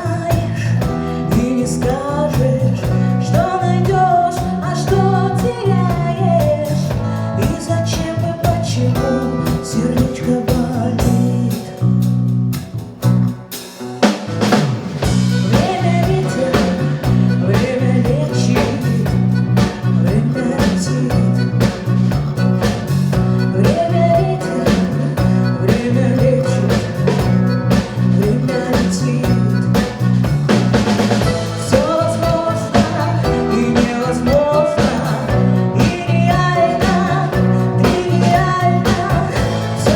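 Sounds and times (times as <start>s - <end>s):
woman singing: 0.0s - 12.0s, 15.3s - 22.1s, 23.3s - 30.1s, 31.2s - 39.9s
live band playing: 0.0s - 39.9s
drum hit: 14.0s - 17.4s, 29.3s - 37.6s.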